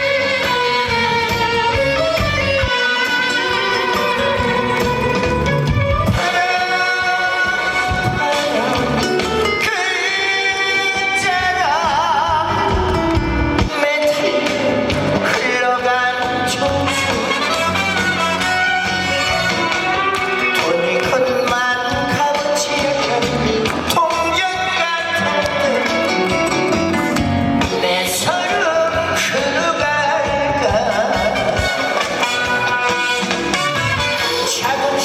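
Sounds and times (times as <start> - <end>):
band playing: 0.0 - 35.0
guitar: 0.0 - 35.0
person singing with vibrato: 0.0 - 35.0.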